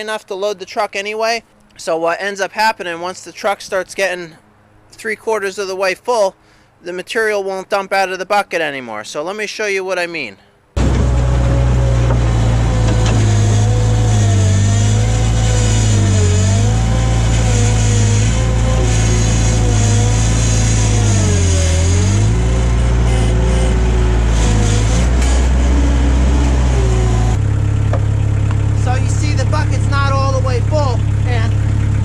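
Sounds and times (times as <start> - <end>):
skid steer engine bogging: 10.8 - 32.0.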